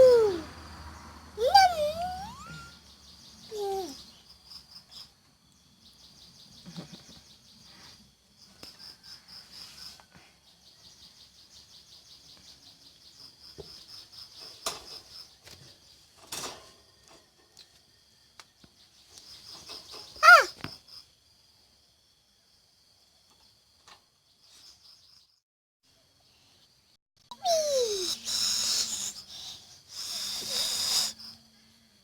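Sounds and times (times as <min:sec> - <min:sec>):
faint high-pitched chirping: 0:00.0 - 0:21.1, 0:23.1 - 0:32.0
kitten mewing: 0:01.4 - 0:02.7, 0:20.2 - 0:20.5.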